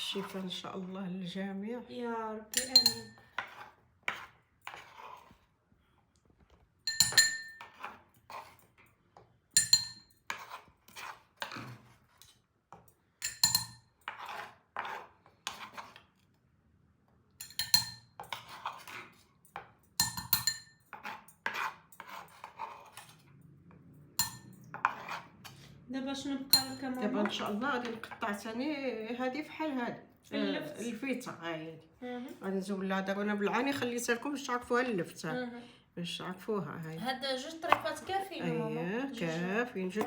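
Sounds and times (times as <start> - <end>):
metal utensils clinking on dishes: 2.5 - 3.6, 6.9 - 7.9, 9.6 - 10.5, 13.2 - 14.4, 17.4 - 18.8, 19.5 - 23.2, 24.2 - 25.3, 26.5 - 28.2.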